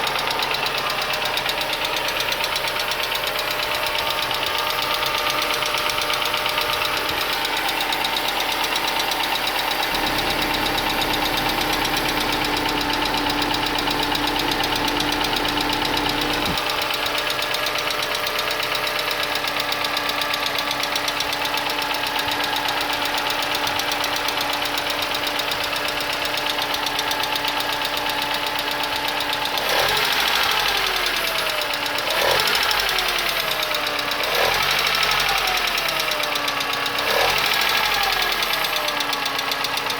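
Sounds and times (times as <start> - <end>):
car engine idling with ticking: 0.0 - 39.9
engine revving: 9.9 - 17.0, 27.1 - 39.8.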